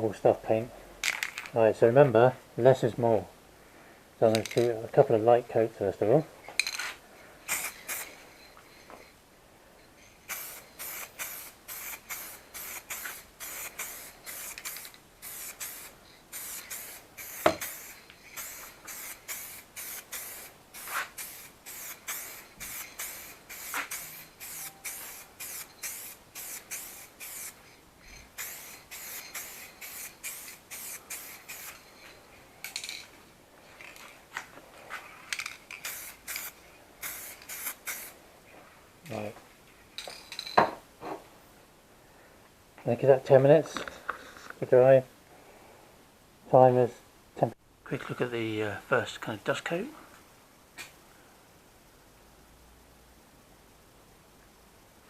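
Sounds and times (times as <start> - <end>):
aerosol spray can hissing: 7.5 - 8.2, 10.2 - 27.6, 28.2 - 31.9, 35.8 - 38.2.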